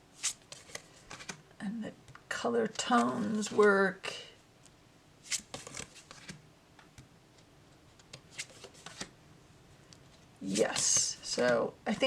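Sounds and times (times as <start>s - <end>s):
cards sliding and tapping: 0.2s - 1.4s, 2.9s - 3.6s, 5.3s - 7.1s, 7.9s - 9.1s, 10.0s - 11.7s.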